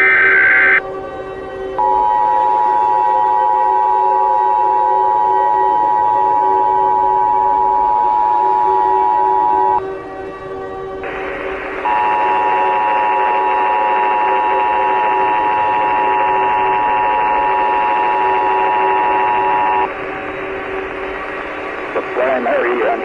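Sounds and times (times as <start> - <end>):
static hiss: 0.0 - 0.8, 11.0 - 23.0
two-tone alert signal: 1.8 - 9.8.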